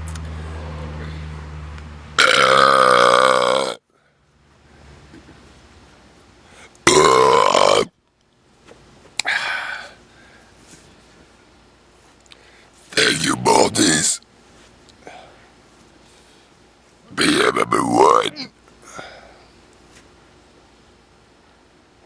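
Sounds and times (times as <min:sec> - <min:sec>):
man burping loudly: 0:02.2 - 0:03.8, 0:06.9 - 0:07.9, 0:13.0 - 0:14.2, 0:17.1 - 0:18.5.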